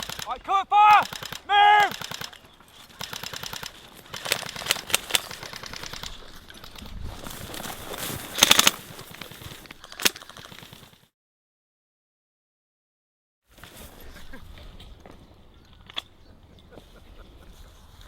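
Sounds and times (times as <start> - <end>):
airsoft guns firing bursts: 0.0 - 6.3, 8.3 - 8.9.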